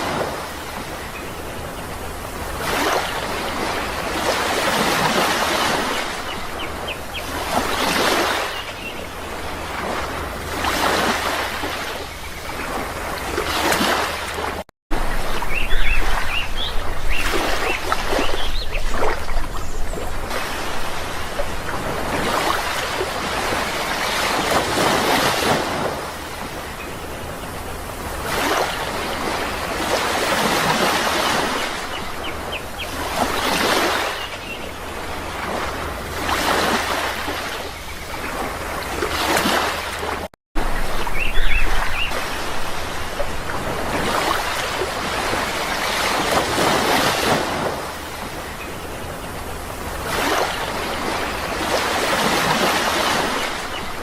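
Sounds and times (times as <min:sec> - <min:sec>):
sea waves breaking: 0:00.0 - 0:54.0
bird chirps: 0:15.4 - 0:20.0, 0:41.1 - 0:42.2.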